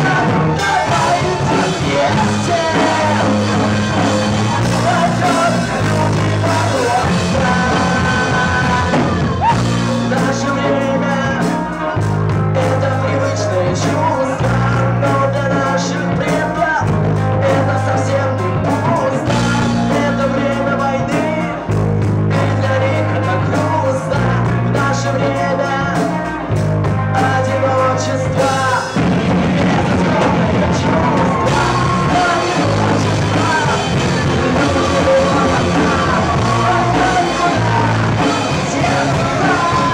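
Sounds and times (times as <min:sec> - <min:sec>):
live rock band playing: 0:00.0 - 0:39.9
person singing: 0:00.0 - 0:39.9.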